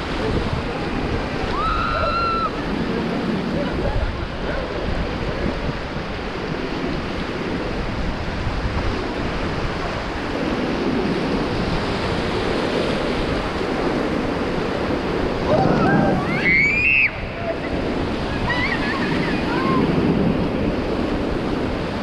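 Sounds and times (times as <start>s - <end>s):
rushing white water: 0.0s - 22.0s
wind buffeting microphone: 0.0s - 22.0s.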